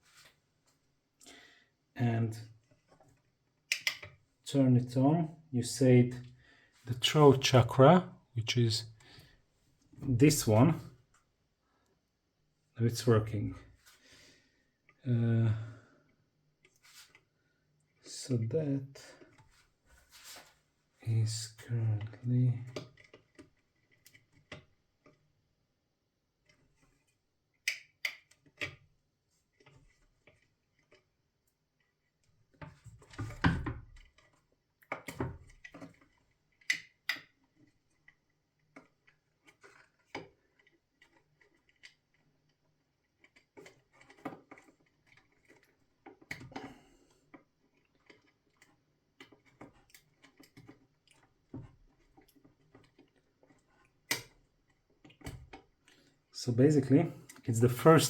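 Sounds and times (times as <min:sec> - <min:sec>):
small plastic clicks and taps: 0:03.7 - 0:04.2, 0:27.6 - 0:28.8, 0:32.6 - 0:42.0.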